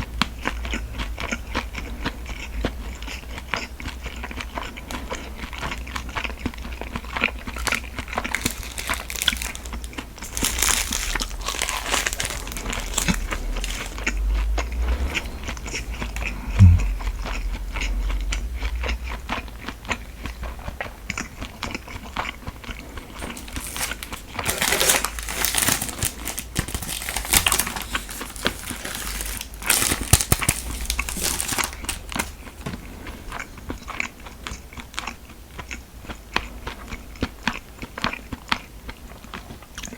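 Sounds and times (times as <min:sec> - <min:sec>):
biting and chewing food: 0:00.2 - 0:39.9
plastic packaging crinkling: 0:07.4 - 0:14.4, 0:23.0 - 0:32.6
low thump: 0:14.9 - 0:17.5.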